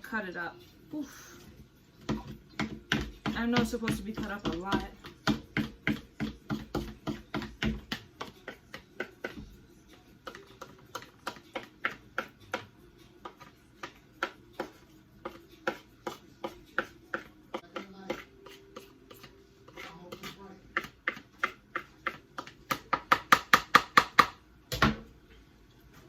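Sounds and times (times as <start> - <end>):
knife chopping on cutting board: 2.0 - 9.6, 10.2 - 25.0.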